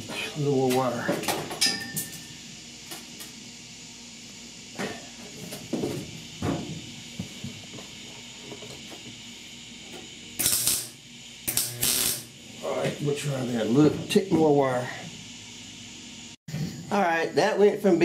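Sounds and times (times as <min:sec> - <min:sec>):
welder hissing bursts: 0:10.3 - 0:13.4.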